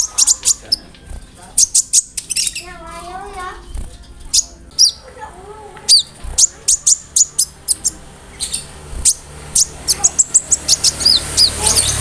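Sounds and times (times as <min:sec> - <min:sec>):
sunbird singing high chips: 0:01.6 - 0:02.8, 0:05.9 - 0:12.0.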